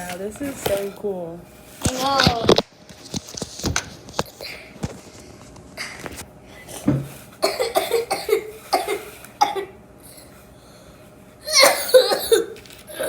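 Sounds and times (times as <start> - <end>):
child coughing: 7.4 - 10.3, 11.4 - 13.0.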